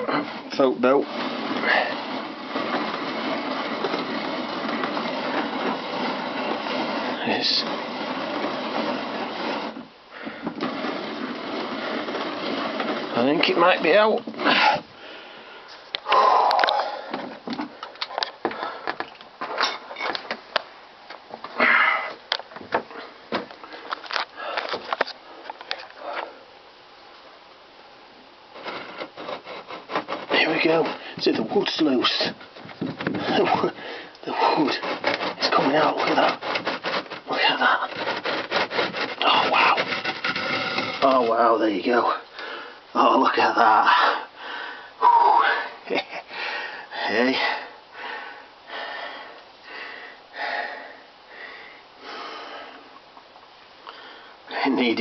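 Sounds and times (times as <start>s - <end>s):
power tool rattling: 0.0s - 14.8s, 28.6s - 41.6s.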